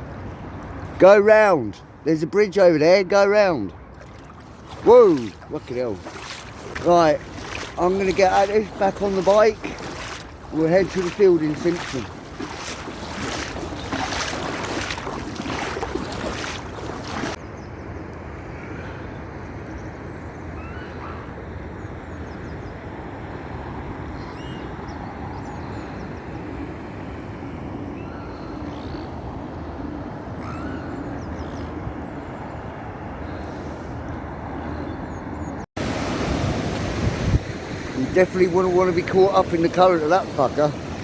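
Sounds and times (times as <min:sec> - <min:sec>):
floodwater rushing: 0:00.7 - 0:17.4, 0:35.8 - 0:41.0
wind buffeting microphone: 0:04.0 - 0:17.4, 0:35.8 - 0:41.0.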